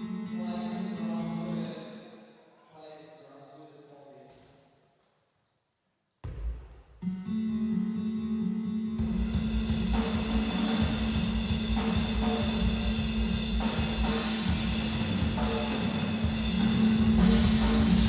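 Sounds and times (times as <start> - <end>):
fast drumming on drum kit: 9.0 - 18.0.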